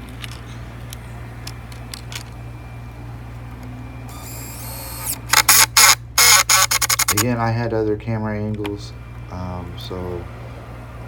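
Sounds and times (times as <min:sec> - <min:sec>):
steady low hum: 0:00.0 - 0:11.0
faint high whine: 0:02.2 - 0:08.0.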